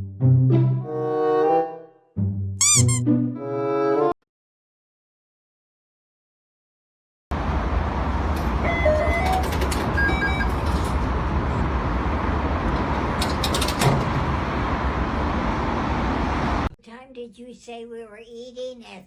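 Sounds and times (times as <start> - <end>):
brief high tones: 2.6 - 3.1
vehicle engine rumble: 7.4 - 16.7.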